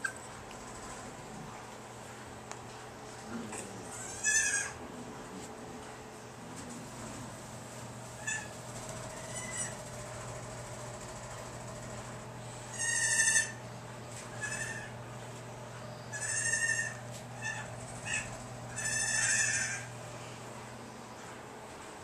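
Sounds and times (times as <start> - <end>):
steady low hum: 0.0 - 22.0
goat kids bleating: 3.9 - 4.8, 12.7 - 13.6, 14.3 - 15.0, 16.1 - 19.9.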